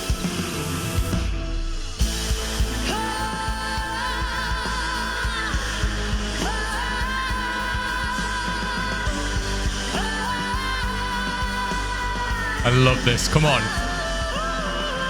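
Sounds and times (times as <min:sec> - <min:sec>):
band with drum beat: 0:11.4 - 0:14.4
man singing high notes: 0:12.6 - 0:14.0.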